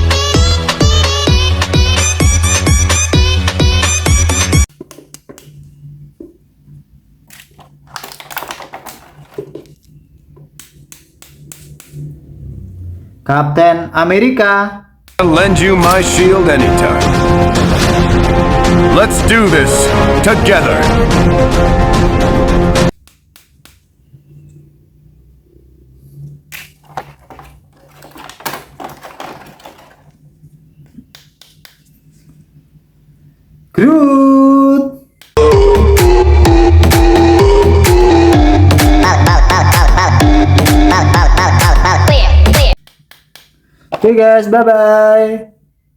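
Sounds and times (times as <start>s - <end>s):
plastic toys clicking and rustling: 7.3s - 9.8s, 26.6s - 30.2s.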